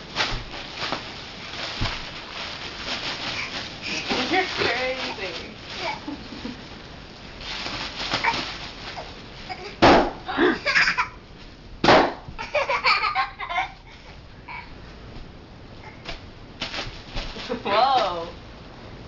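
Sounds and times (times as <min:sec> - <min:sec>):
bubble wrap popping: 0:00.0 - 0:06.6, 0:07.4 - 0:09.1, 0:16.0 - 0:18.3
small child laughing: 0:09.5 - 0:11.2, 0:12.4 - 0:14.7.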